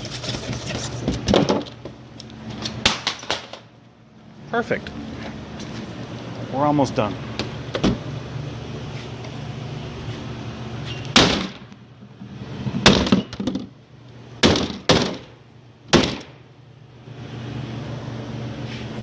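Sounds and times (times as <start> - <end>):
laptop being struck: 15.9 - 16.4.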